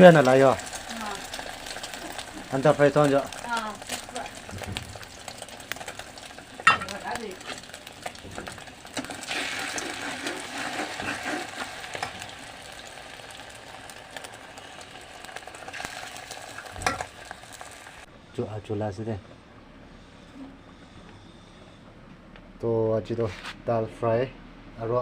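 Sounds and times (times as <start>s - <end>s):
food sizzling in a pan: 0.0s - 18.1s
utensil stirring and scraping: 8.4s - 12.1s.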